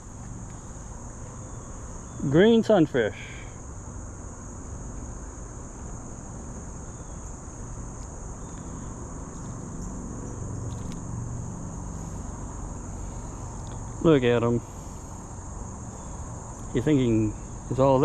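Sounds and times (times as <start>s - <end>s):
high-pitched insect chorus: 0.0s - 18.0s
faint ticks: 7.9s - 11.1s, 13.5s - 13.9s.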